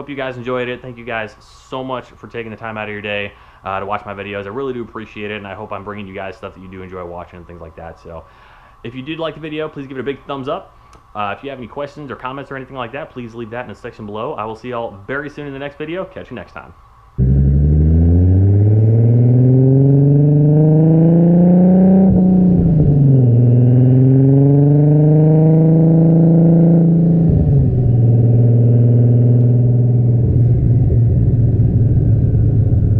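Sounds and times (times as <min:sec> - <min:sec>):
car engine accelerating hard: 0:17.2 - 0:32.9.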